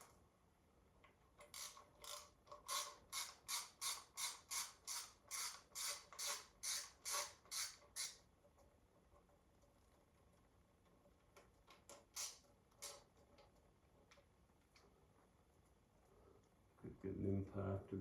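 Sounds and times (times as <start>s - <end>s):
ratchet wrench ratcheting: 1.4s - 8.2s.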